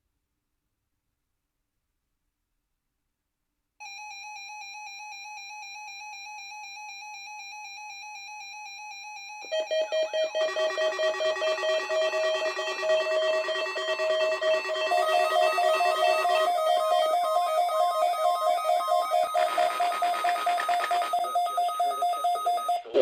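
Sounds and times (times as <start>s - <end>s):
pulsing multi-tone alarm: 3.8s - 23.0s
steady buzzy electronic tone: 9.6s - 22.7s.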